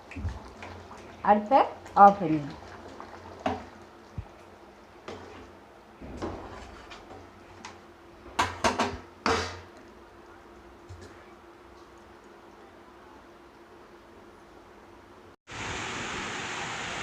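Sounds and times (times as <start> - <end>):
cookware knocking and clattering: 8.4 - 9.6.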